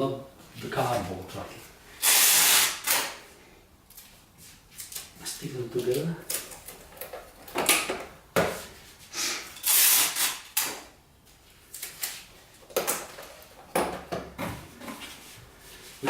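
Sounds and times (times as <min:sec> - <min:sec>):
tape pulled off a roll: 0:02.0 - 0:03.2, 0:09.6 - 0:10.9.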